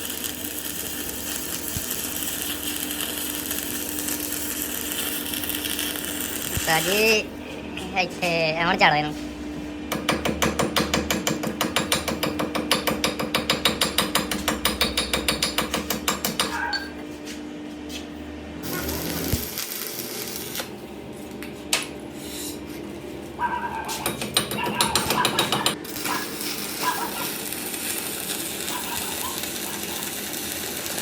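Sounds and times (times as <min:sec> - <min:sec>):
machine motor hum: 0:18.2 - 0:21.5.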